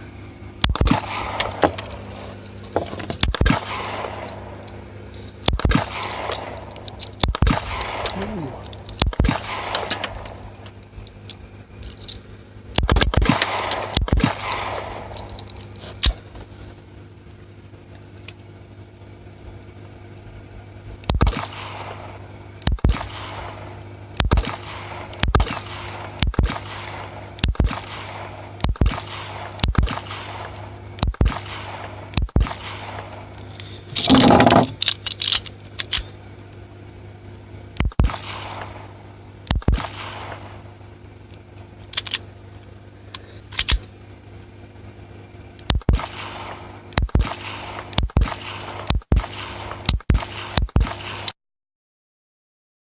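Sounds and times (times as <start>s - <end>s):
pistol shots with ringing echo: 0.7s - 1.9s, 3.4s - 4.5s, 5.4s - 10.6s, 12.8s - 15.3s, 21.2s - 22.2s, 22.8s - 33.3s, 38.0s - 40.7s, 45.9s - 51.3s.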